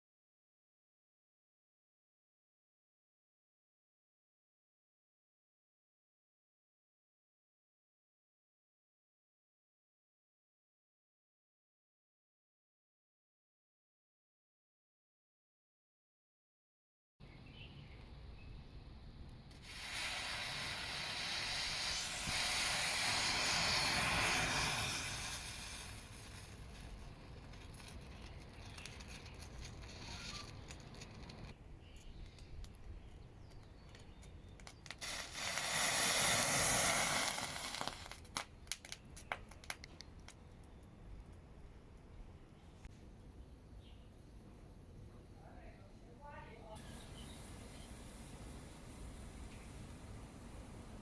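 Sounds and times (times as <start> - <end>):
sharp crackles and pops: 19.3 - 42.9, 46.7 - 51.0
firework composition hissing: 19.5 - 31.6, 34.7 - 38.9, 46.8 - 51.0.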